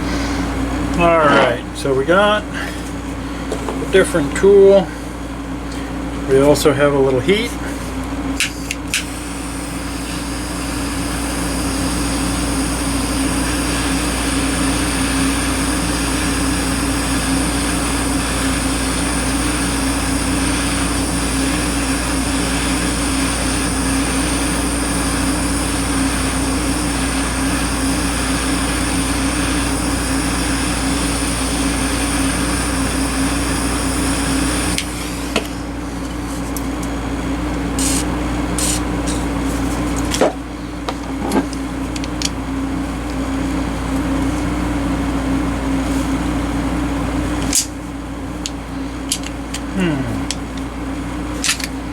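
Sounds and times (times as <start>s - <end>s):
heating tool hissing and humming: 8.4s - 39.4s.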